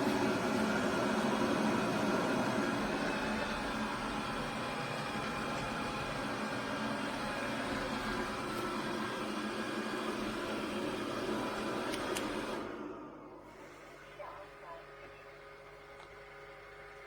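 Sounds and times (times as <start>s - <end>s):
motor whirring hum: 0.0s - 14.1s.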